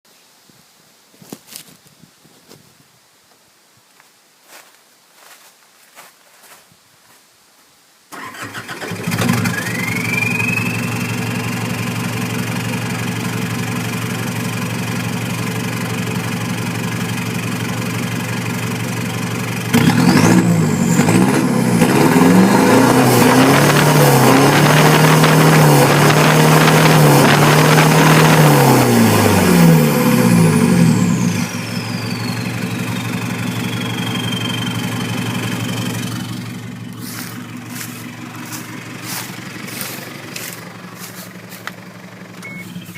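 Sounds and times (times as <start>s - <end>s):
diesel engine idling and revving: 8.1s - 42.9s
turbo whistle: 9.6s - 11.1s, 31.4s - 36.4s, 42.4s - 42.9s.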